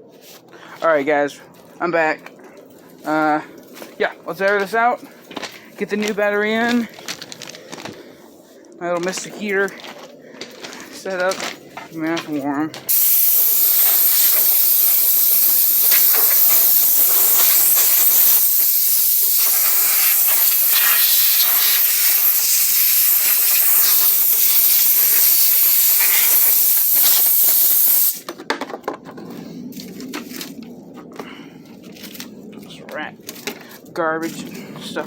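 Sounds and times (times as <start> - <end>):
compressed-air blow gun hissing: 12.9 - 28.2.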